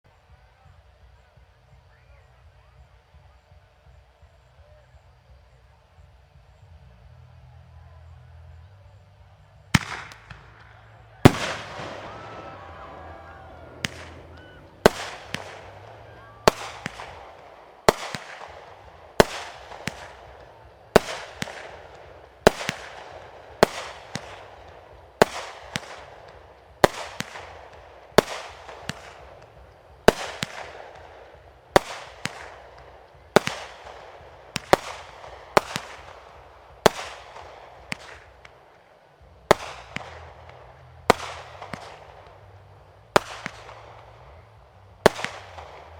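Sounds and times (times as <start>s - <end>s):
fireworks bangs with rumbling echo: 9.2s - 45.9s.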